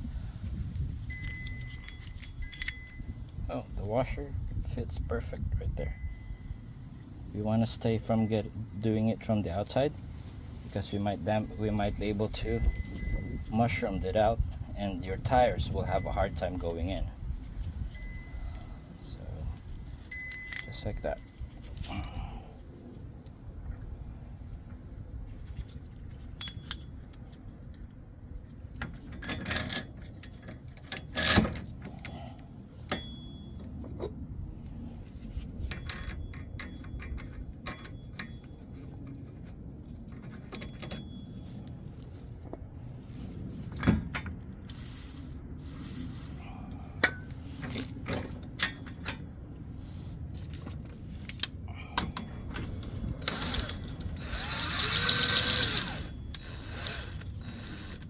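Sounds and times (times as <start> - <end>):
metal tool parts clinking: 0.7 - 3.4, 19.5 - 21.8, 25.6 - 27.8, 35.5 - 42.1, 50.4 - 58.0.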